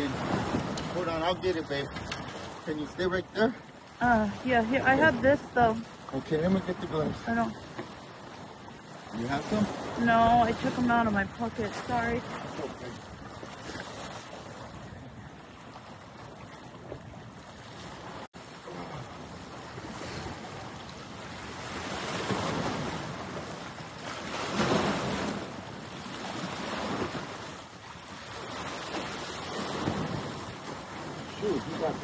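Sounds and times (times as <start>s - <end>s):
wind buffeting microphone: 0.0s - 2.7s, 3.7s - 32.0s
rushing water: 0.0s - 32.0s.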